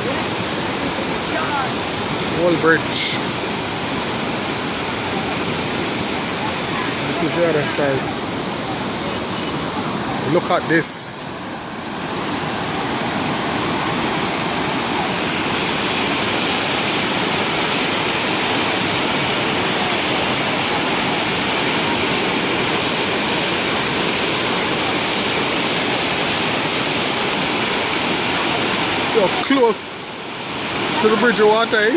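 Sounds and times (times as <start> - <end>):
river rushing: 0.0 - 31.9.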